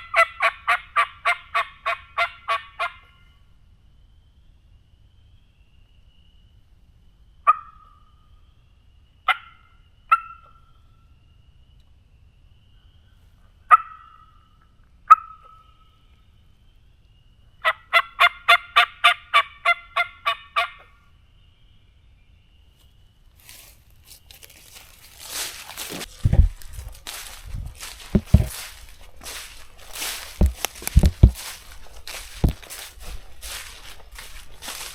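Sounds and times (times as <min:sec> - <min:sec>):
turkey clucks and yelps: 0:00.0 - 0:03.2, 0:07.5 - 0:08.0, 0:09.3 - 0:10.6, 0:13.7 - 0:14.4, 0:15.1 - 0:15.7, 0:17.6 - 0:21.0, 0:27.0 - 0:34.9
footsteps through dry leaves: 0:23.4 - 0:34.9.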